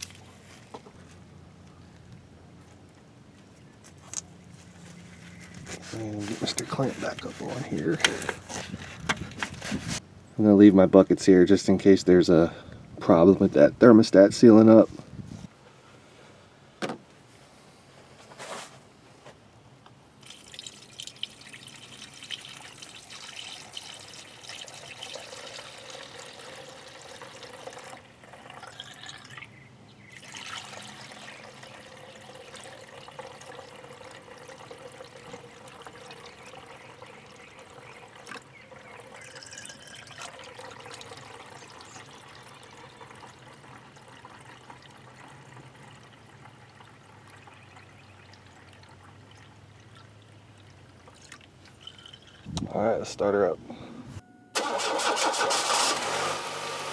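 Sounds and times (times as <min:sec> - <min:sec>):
liquid pouring and trickling: 0:20.2 - 0:29.5, 0:30.1 - 0:52.6.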